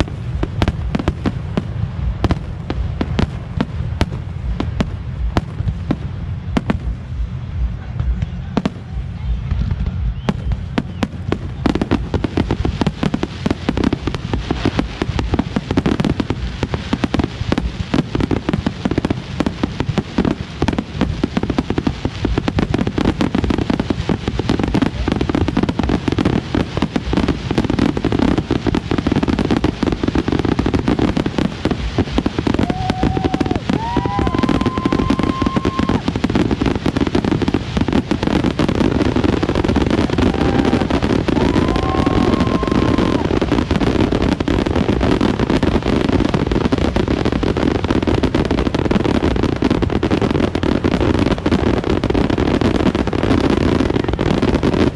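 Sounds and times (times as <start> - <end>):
fireworks exploding and crackling: 0.0 - 54.9
short whistling tones: 10.0 - 11.0.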